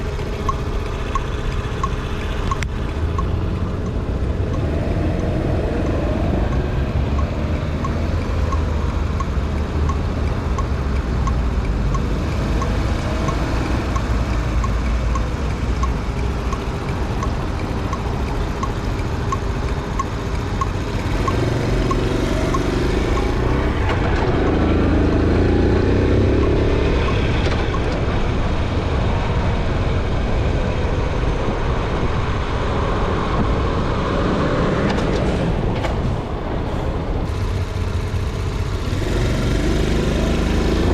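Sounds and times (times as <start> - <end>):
motorcycle engine running: 0.0 - 9.6, 37.3 - 40.9
light ticking: 0.0 - 24.0.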